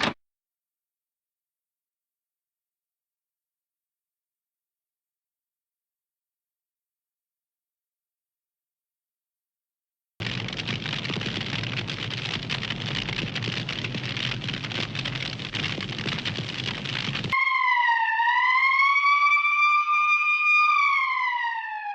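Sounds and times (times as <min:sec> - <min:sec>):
rushing crackling noise: 0:10.2 - 0:17.4
cartoon siren sound effect: 0:17.4 - 0:21.9.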